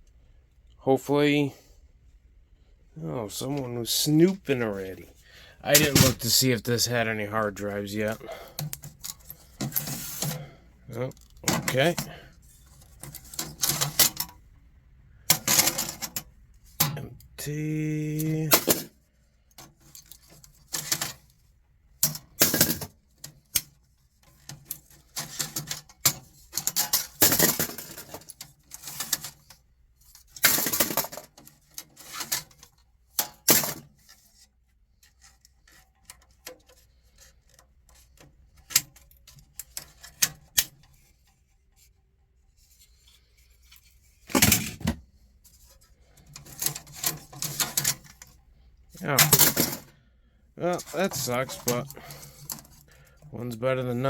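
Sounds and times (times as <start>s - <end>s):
metal server chassis clattering: 5.7s - 6.6s, 50.8s - 51.9s.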